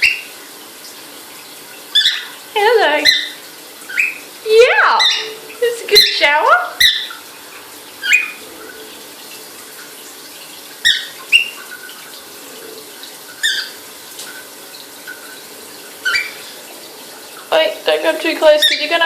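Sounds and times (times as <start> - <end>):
shower water running: 0.0 - 19.0
cockatiel chirping: 16.0 - 16.4.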